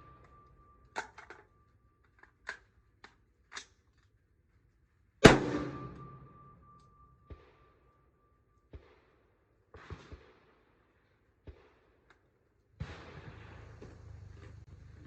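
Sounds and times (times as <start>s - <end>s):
rifle handling clicks: 1.0s - 4.2s
rifle shot ringing out: 5.2s - 7.8s.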